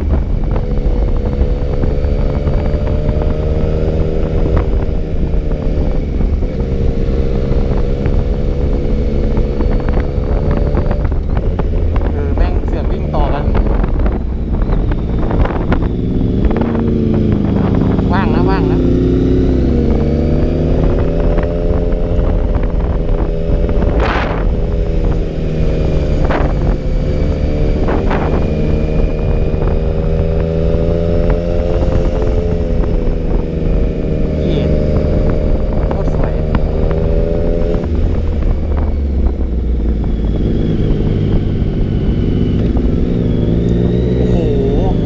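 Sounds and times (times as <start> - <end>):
motorcycle engine running: 0.0 - 45.0
wind rumble: 0.0 - 45.0.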